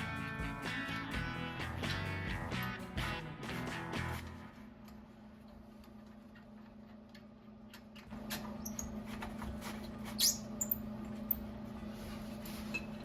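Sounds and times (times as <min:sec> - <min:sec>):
short high squeaks: 0:10.1 - 0:10.9.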